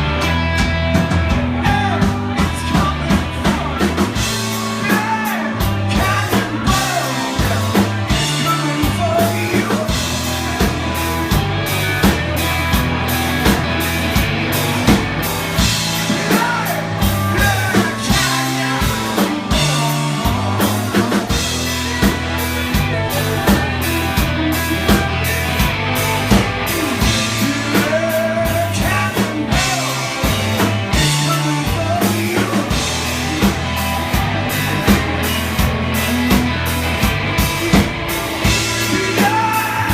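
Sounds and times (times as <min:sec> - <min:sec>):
rock band playing live: 0:00.0 - 0:39.9
person singing: 0:01.6 - 0:11.3, 0:16.0 - 0:39.9.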